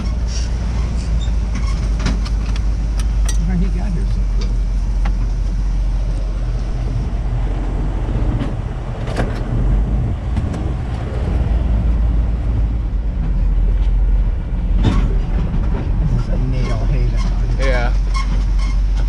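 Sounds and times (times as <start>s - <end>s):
vehicle engine rumbling: 0.0s - 19.0s.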